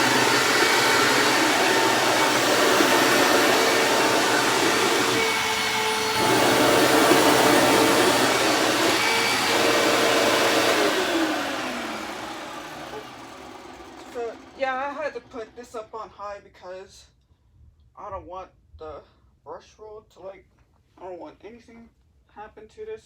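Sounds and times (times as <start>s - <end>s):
motor spinning down: 0.0s - 15.7s
vacuum cleaner whining: 0.0s - 15.8s.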